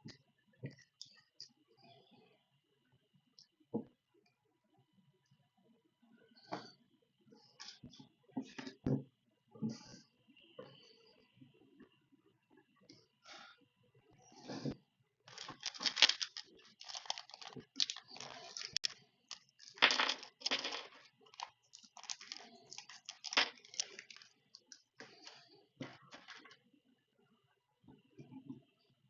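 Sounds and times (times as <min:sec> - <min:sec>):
crinkling and rustling: 0:14.4 - 0:26.7.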